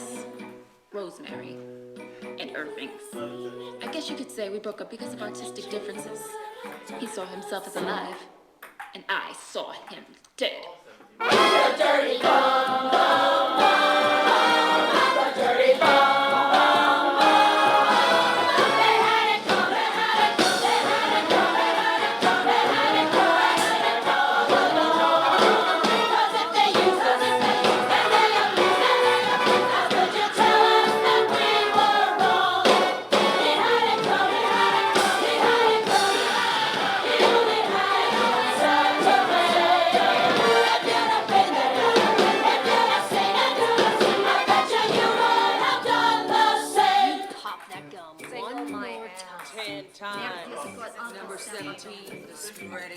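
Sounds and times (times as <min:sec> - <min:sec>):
musical accompaniment: 0:00.0 - 0:08.1, 0:11.2 - 0:52.9
group singing a tango-style tune: 0:02.6 - 0:04.1, 0:11.2 - 0:47.5.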